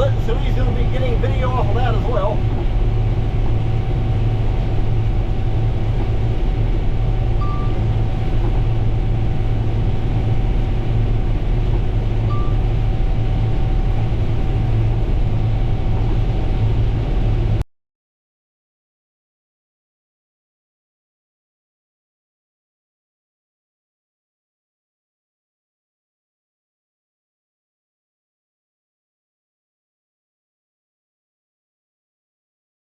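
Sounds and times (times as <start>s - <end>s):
combine harvester running: 0.0s - 17.6s
short high beeps: 7.4s - 7.9s, 12.3s - 12.7s.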